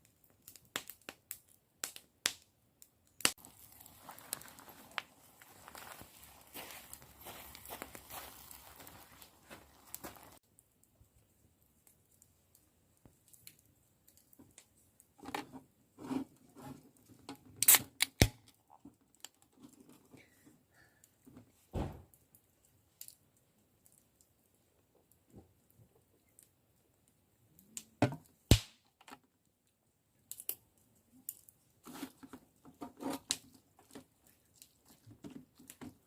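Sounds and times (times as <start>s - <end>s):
rustling: 3.4s - 10.4s.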